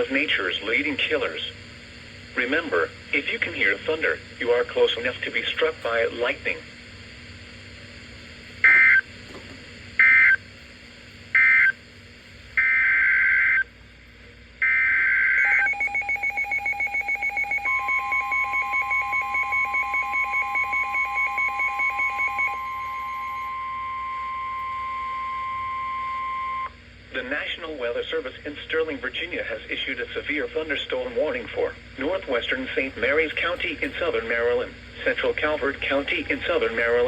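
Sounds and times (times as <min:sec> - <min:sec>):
steady single-pitch warning tone: 0:08.6 - 0:09.1, 0:10.0 - 0:10.5, 0:11.3 - 0:11.9, 0:12.6 - 0:13.8, 0:14.6 - 0:26.8
fast-pulsing alert beep: 0:15.4 - 0:23.5
alert data burst tones: 0:15.4 - 0:26.7.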